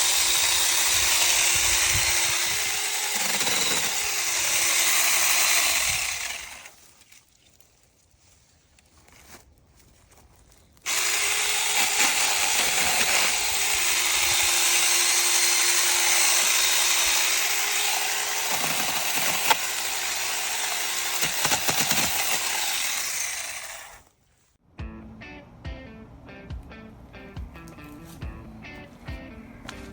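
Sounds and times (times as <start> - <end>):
electric chainsaw whining: 0.0 - 7.1, 10.8 - 24.1.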